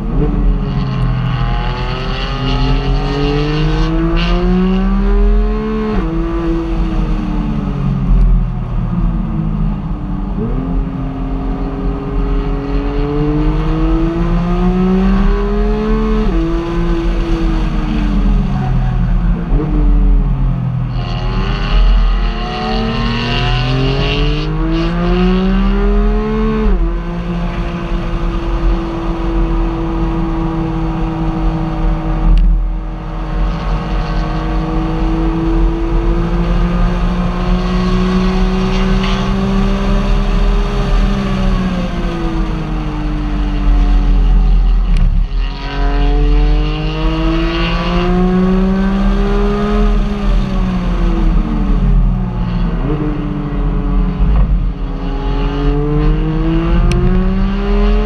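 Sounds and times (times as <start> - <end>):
car engine accelerating: 0.0 - 58.0.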